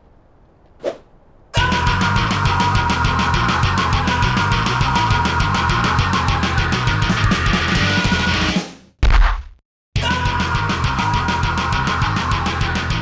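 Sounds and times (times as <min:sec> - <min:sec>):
heavy rock music: 0:01.6 - 0:08.7, 0:10.0 - 0:13.0.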